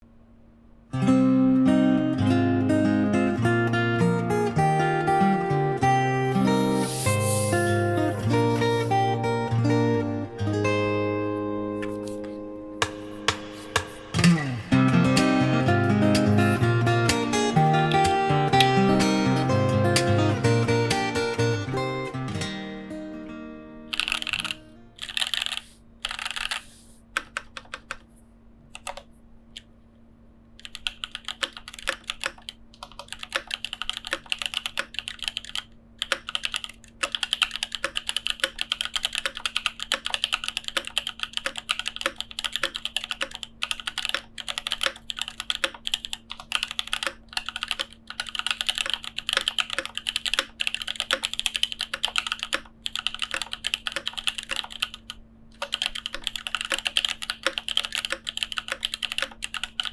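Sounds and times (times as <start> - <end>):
mechanical keyboard typing: 6.3 - 9.0, 23.9 - 28.0, 28.8 - 29.1, 30.6 - 59.9.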